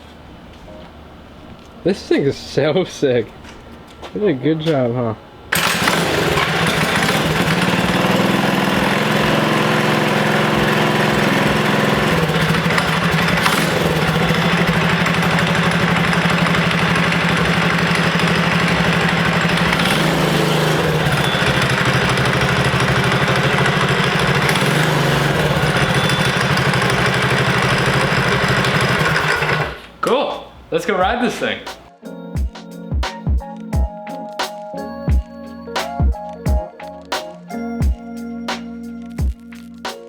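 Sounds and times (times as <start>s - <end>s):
small engine idling: 5.5s - 30.0s.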